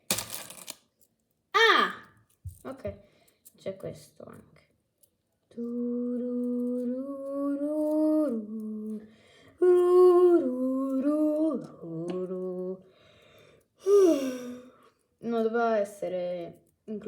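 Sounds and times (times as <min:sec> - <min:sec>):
woman humming a tune: 0:05.6 - 0:12.8, 0:13.8 - 0:14.6.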